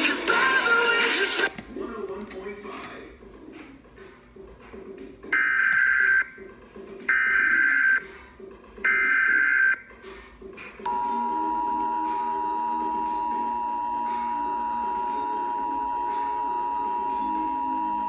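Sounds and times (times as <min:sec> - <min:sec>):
steady attention tone: 0:10.9 - 0:18.0.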